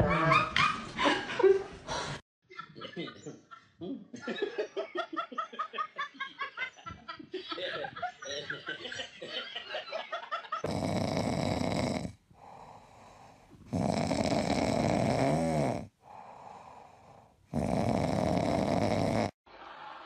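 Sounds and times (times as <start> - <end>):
pet snoring: 10.6 - 19.4
quiet breathing: 10.7 - 19.4.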